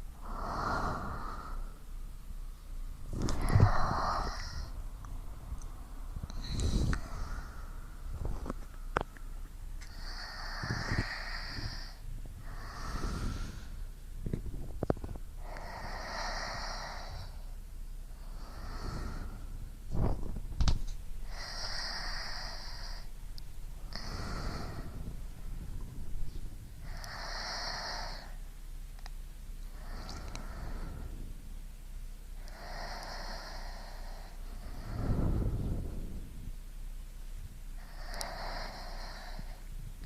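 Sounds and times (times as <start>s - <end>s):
person breathing slowly: 0.0s - 20.3s, 21.2s - 31.5s, 32.3s - 36.6s, 37.7s - 40.0s
low thumps: 19.6s - 21.3s.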